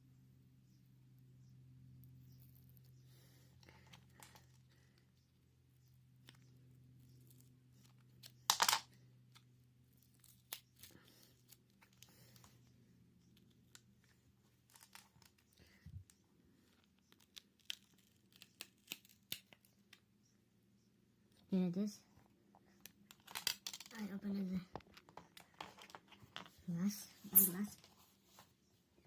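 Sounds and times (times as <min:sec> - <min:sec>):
faint low hum: 0:00.0 - 0:29.0
adhesive tearing: 0:16.9 - 0:19.8
small clicks and taps of handling: 0:24.7 - 0:26.6.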